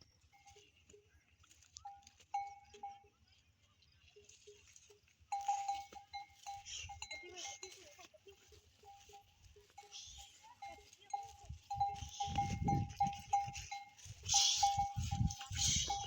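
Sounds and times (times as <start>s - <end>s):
livestock neck bells clinking: 0.0s - 16.0s.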